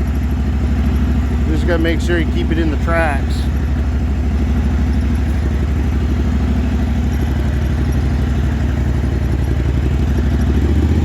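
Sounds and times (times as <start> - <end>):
small engine running: 0.0 - 11.0.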